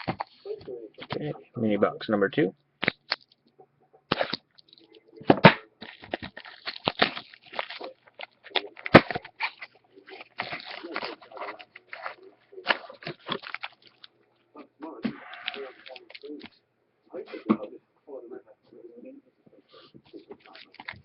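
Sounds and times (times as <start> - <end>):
wrapping crinkling and tearing: 4.1 - 4.9, 5.8 - 14.1, 15.3 - 16.5, 20.1 - 21.0.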